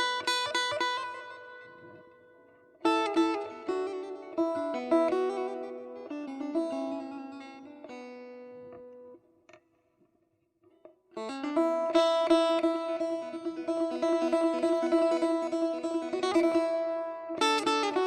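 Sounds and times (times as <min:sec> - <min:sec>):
plucked string instrument music: 0:00.0 - 0:09.2, 0:10.8 - 0:18.0.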